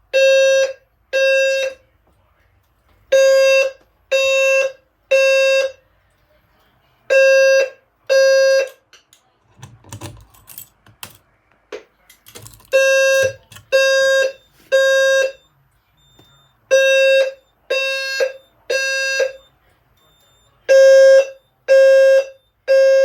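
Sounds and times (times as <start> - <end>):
fire alarm buzzy low tone: 0.0 - 1.8, 3.1 - 5.8, 12.7 - 23.0.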